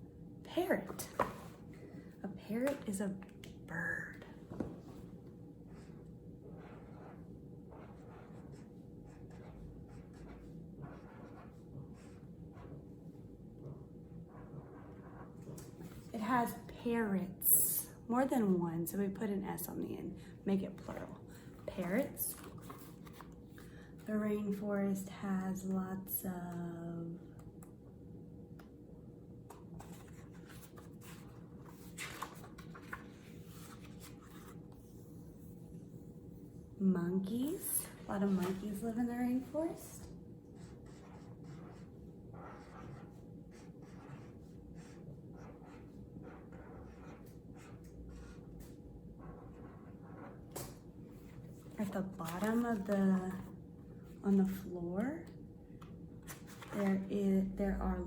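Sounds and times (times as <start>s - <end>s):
pen scratching on paper: 5.7s - 12.9s, 13.6s - 15.6s, 40.6s - 50.5s.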